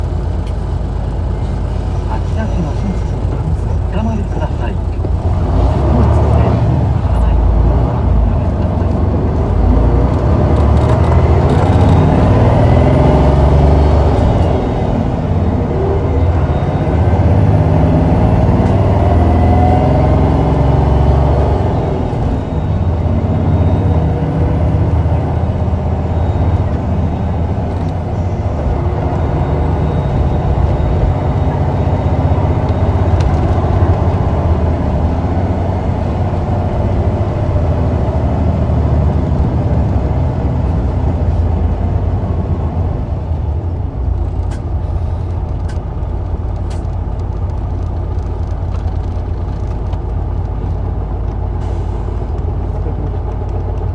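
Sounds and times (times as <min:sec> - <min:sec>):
bus diesel engine pulling away: 0:00.0 - 0:53.9
sharp clicks: 0:10.1 - 0:12.3.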